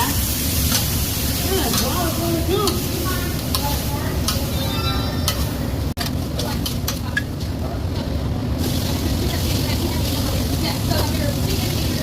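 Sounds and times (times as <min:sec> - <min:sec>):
food sizzling: 0:00.0 - 0:05.9, 0:08.6 - 0:12.0.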